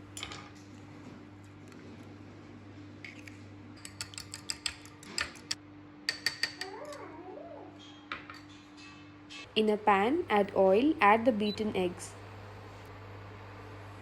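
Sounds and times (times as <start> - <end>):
fork clicking against bowl: 3.8 - 7.0
faint steady hum: 9.2 - 14.0.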